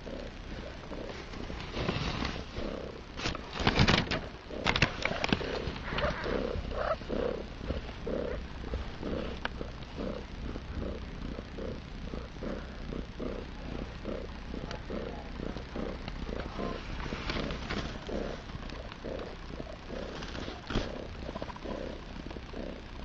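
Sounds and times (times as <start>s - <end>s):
cat purring: 0.0s - 23.0s
rustling and crackling clicks: 0.1s - 23.0s.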